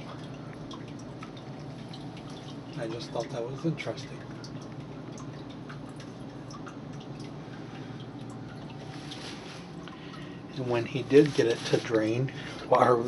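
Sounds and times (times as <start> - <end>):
water dripping: 0.0 - 13.0
steady low hiss: 8.7 - 13.0.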